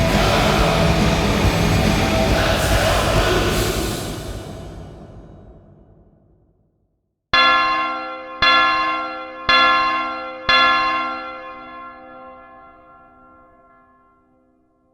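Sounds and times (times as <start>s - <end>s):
bell struck: 7.4s - 13.8s.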